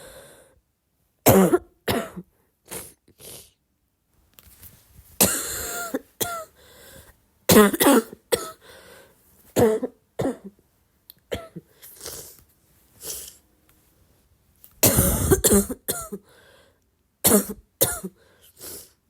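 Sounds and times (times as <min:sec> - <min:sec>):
person coughing: 0:01.3 - 0:02.3, 0:05.2 - 0:06.6, 0:07.5 - 0:08.6, 0:09.6 - 0:10.6, 0:11.3 - 0:12.0, 0:14.8 - 0:16.3, 0:17.2 - 0:18.2.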